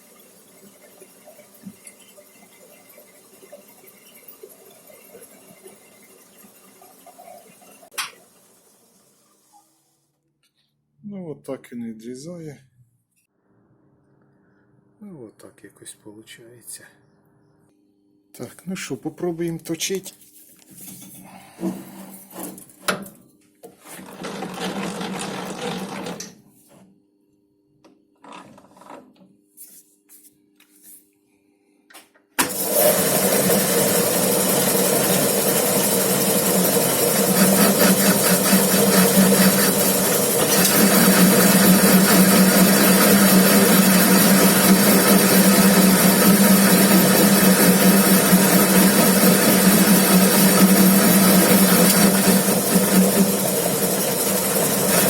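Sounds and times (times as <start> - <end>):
metal lathe running with low hum: 32.5 - 55.0.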